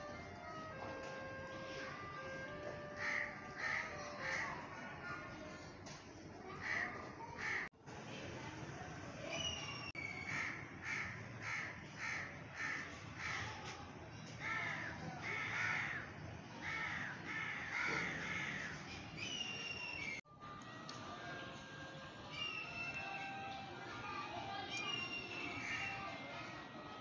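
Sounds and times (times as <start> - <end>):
crows cawing: 3.0 - 4.7, 6.6 - 7.7, 10.3 - 13.5, 14.4 - 18.8, 25.6 - 26.1
bird whistled note: 19.2 - 20.2, 22.3 - 23.4, 24.8 - 25.9.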